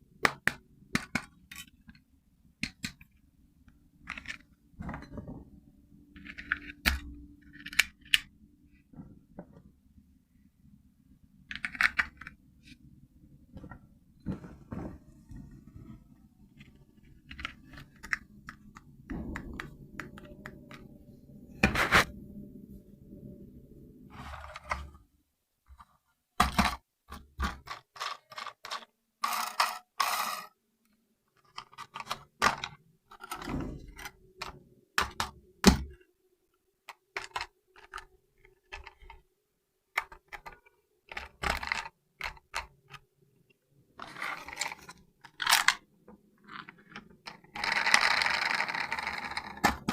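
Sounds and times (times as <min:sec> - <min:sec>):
low steady hum: 0:00.0 - 0:25.3
plastic toy being handled: 0:00.2 - 0:02.0, 0:04.0 - 0:05.4, 0:06.2 - 0:09.7, 0:11.4 - 0:12.9, 0:13.5 - 0:20.9, 0:24.1 - 0:25.0, 0:25.7 - 0:30.6, 0:31.2 - 0:36.0, 0:36.8 - 0:39.3, 0:39.9 - 0:49.9.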